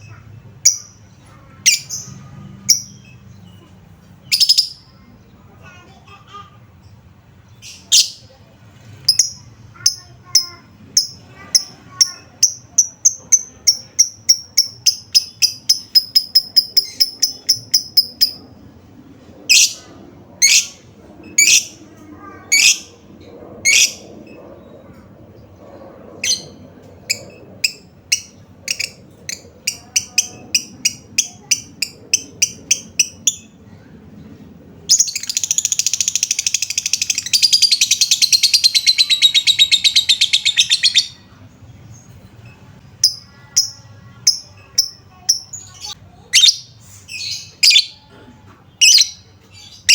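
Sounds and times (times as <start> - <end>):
bird chattering trill: 9.0 - 18.4, 34.9 - 41.3
lovebird chirping: 9.0 - 18.4.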